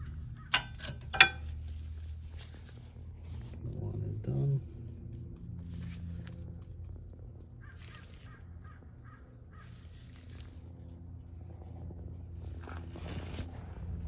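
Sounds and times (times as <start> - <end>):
steady low hum: 0.0 - 7.7.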